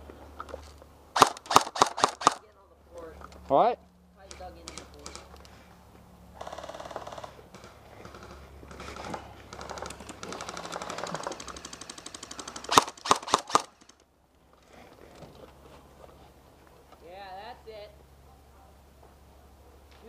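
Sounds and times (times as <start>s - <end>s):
sharp loud cracks: 1.1s - 2.4s, 10.2s - 14.0s
airsoft guns full-auto bursts: 1.2s - 2.4s, 9.6s - 14.0s.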